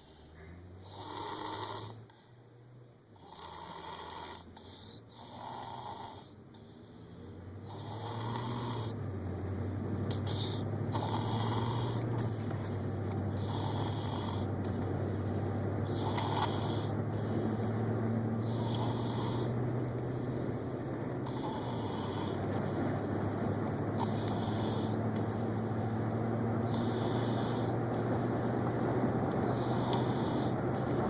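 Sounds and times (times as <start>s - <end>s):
snoring: 0.0s - 2.2s, 3.2s - 6.4s, 7.6s - 9.0s, 10.0s - 12.7s, 13.3s - 19.6s, 21.2s - 22.6s, 23.9s - 25.2s, 26.5s - 27.8s, 29.3s - 31.0s
steady low hum: 1.9s - 31.0s.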